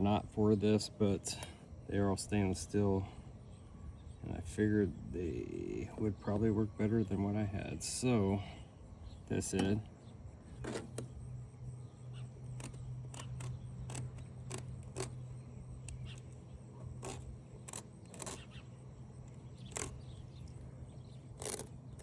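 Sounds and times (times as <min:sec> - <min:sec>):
steady low hum: 0:00.0 - 0:22.0
small metal hardware clicking: 0:12.5 - 0:15.2.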